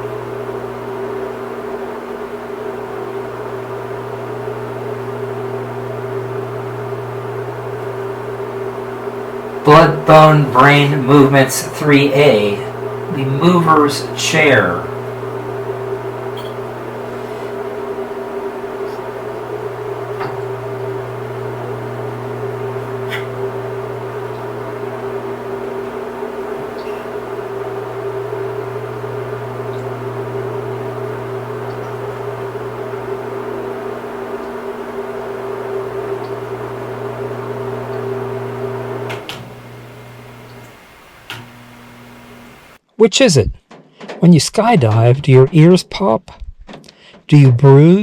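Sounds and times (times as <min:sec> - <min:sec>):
steady electrical hum: 0:00.0 - 0:43.6.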